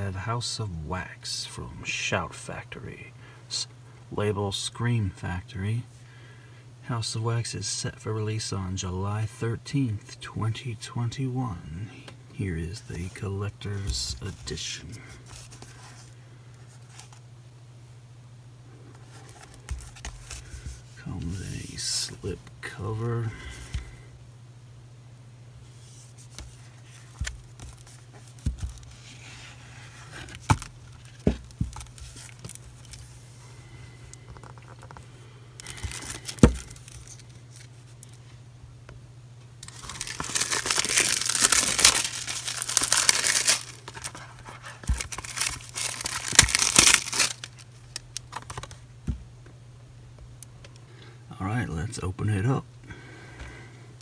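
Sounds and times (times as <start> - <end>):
plastic wrap tearing and crinkling: 35.6 - 38.2, 39.6 - 48.7.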